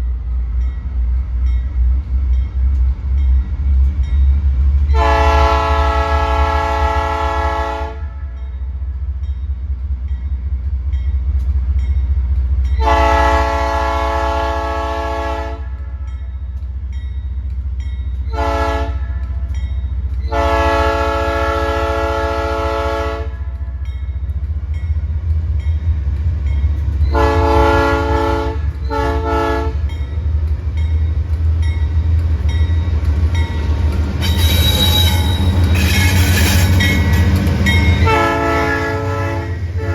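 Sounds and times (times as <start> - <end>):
low train rumble: 0.0 - 39.9
locomotive air horn blasts: 4.9 - 8.3, 12.8 - 15.9, 18.3 - 19.3, 20.3 - 23.5, 27.2 - 29.8, 34.2 - 36.8, 38.0 - 39.9.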